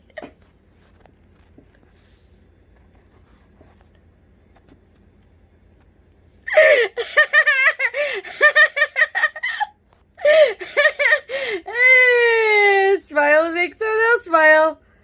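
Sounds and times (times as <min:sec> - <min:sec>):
woman giggling: 0:06.5 - 0:12.6.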